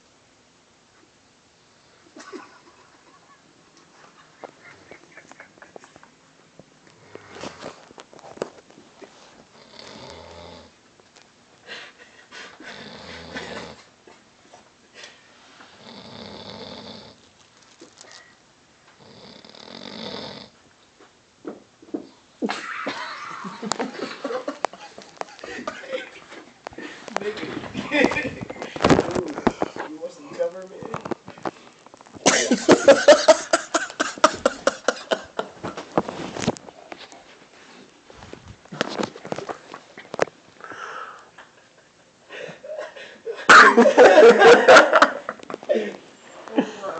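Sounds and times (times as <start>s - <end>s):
person snoring: 7.0s - 7.8s, 9.6s - 10.8s, 12.6s - 13.9s, 15.8s - 17.2s, 19.0s - 20.6s.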